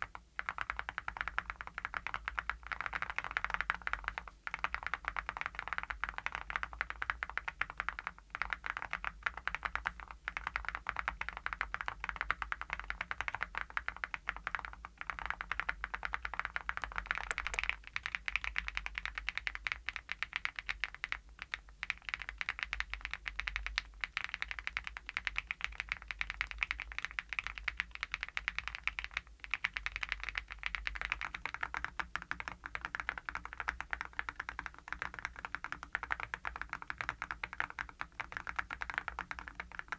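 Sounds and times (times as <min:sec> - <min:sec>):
fast typing on mechanical keyboard: 0:17.3 - 0:20.9, 0:21.5 - 0:39.9.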